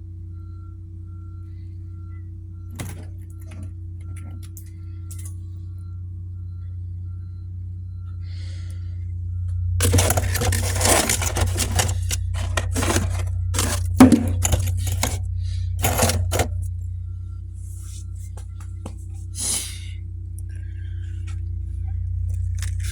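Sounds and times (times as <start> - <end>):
steady low hum: 0.0 - 22.9
frost scraping and crunching: 9.8 - 16.7, 22.4 - 22.9.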